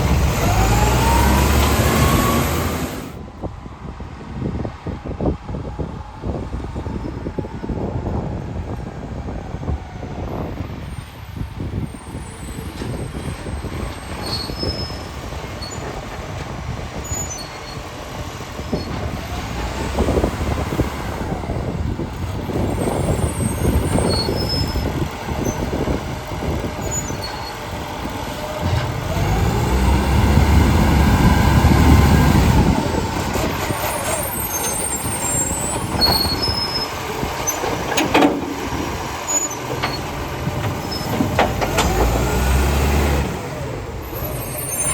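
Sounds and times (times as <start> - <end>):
diesel truck engine revving: 0.0 - 3.2, 11.7 - 44.9.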